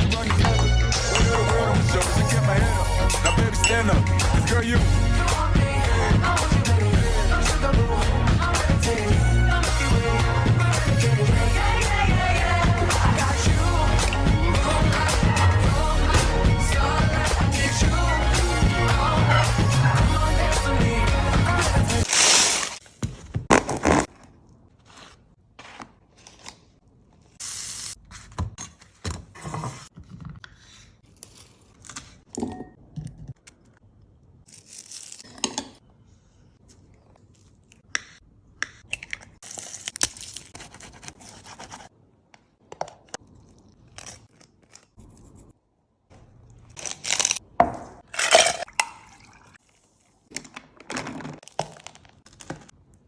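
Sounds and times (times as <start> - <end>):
utensils and dishes clinking: 0.5 - 1.8, 3.2 - 4.0.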